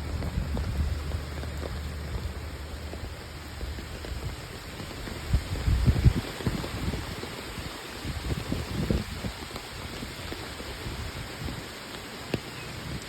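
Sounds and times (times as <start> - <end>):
low gusting rumble: 0.0 - 7.2
steady rain falling: 0.0 - 13.0.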